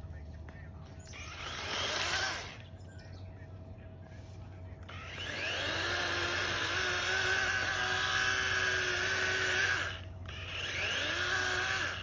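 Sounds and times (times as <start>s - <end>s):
electric chainsaw motor whining: 1.0s - 2.7s, 4.8s - 12.0s.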